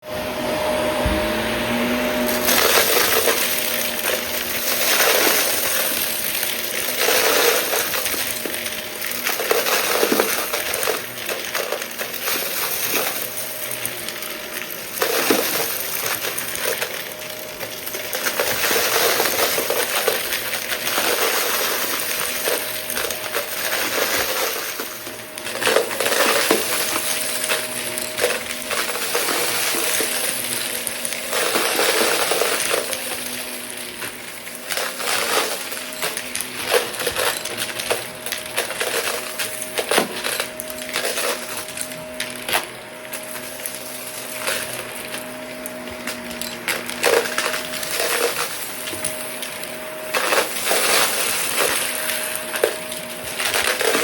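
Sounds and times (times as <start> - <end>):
vacuum cleaner motor whine: 0.0 - 54.0
debris rattling through nozzle: 2.2 - 54.0.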